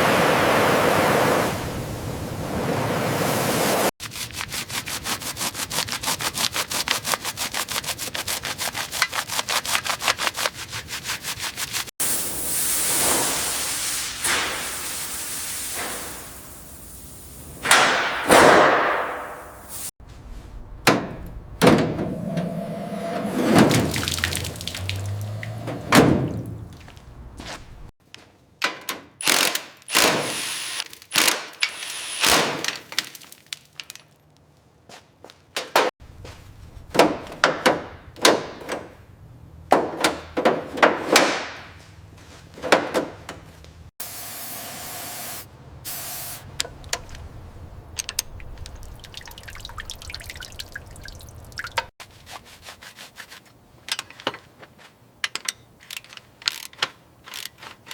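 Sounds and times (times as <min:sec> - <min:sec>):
burst of hiss: 0:12.0 - 0:17.8, 0:44.0 - 0:46.6
knocks and thunks: 0:20.6 - 0:22.5, 0:23.4 - 0:27.9.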